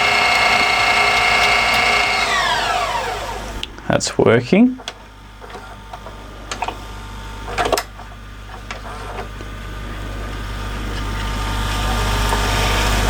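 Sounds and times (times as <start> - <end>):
tape mechanism clicks: 0.0 - 2.2
tape winding at high speed: 0.0 - 3.6.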